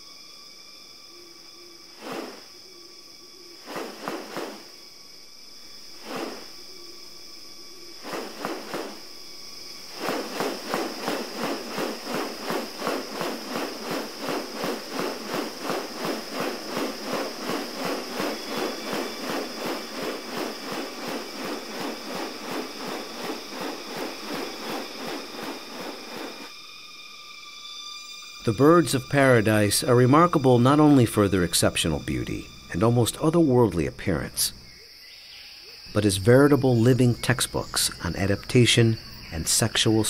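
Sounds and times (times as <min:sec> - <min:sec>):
high-pitched insect drone: 0:00.0 - 0:40.0
rapid pulsed rasping: 0:03.5 - 0:04.9, 0:05.9 - 0:06.9, 0:07.7 - 0:32.9.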